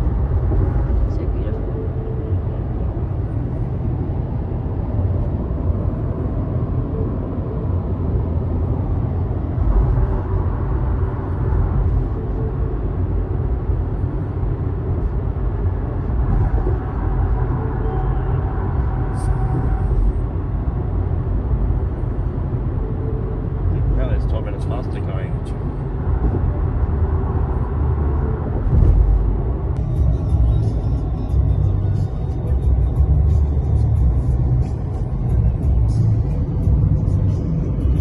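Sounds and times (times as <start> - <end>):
car engine and tyre rumble: 0.0 - 38.0.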